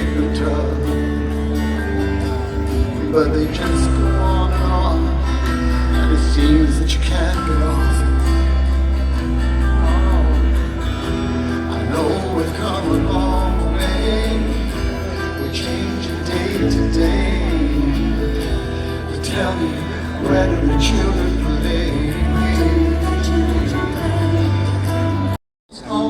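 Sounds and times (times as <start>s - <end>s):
live band over loudspeakers: 0.0s - 26.0s
person singing: 0.0s - 26.0s.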